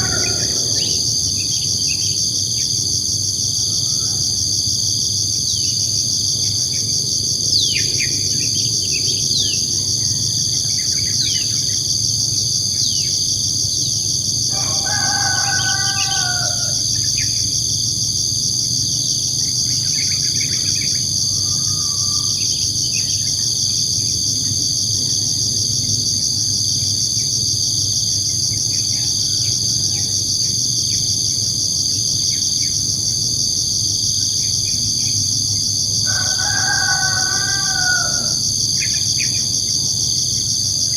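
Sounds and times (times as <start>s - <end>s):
rooster crowing: 0.0s - 1.5s, 3.6s - 4.5s, 14.5s - 17.2s, 21.1s - 22.5s, 36.0s - 38.6s
high-pitched insect chorus: 0.0s - 40.9s.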